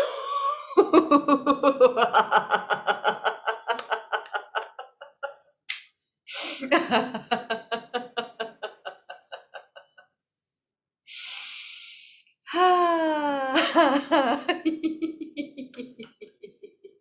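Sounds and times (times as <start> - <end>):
woman laughing: 0.0 - 5.5, 6.4 - 10.0, 12.5 - 17.0
breath in: 11.1 - 12.3.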